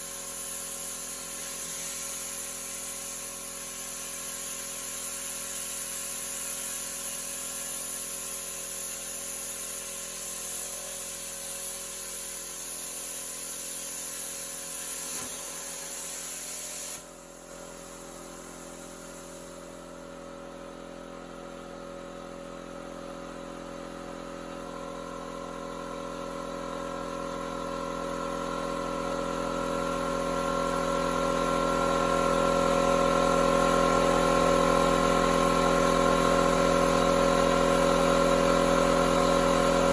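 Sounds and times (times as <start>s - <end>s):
plasma cutter torch hissing: 0.0s - 20.0s.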